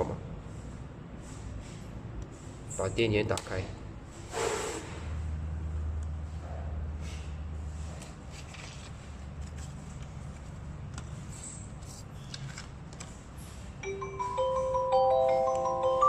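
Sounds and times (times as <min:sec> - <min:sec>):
bell-like chime notes: 0:13.8 - 0:16.0.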